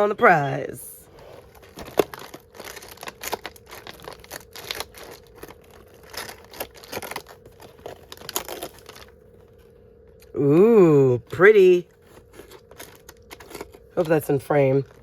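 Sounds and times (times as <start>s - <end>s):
packaging crinkling and tearing: 1.4s - 9.6s, 12.0s - 15.0s.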